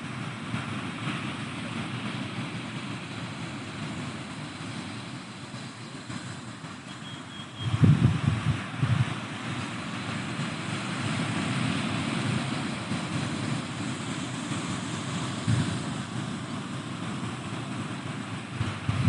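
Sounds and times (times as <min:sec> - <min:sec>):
ocean surf washing: 0:00.0 - 0:19.0
wind buffeting microphone: 0:07.6 - 0:19.0.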